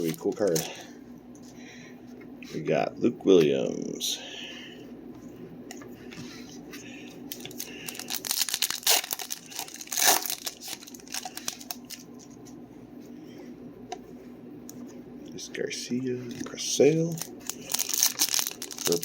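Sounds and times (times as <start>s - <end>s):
foil wrapper crinkling and tearing: 0.0s - 0.7s, 7.3s - 12.1s, 17.0s - 19.0s.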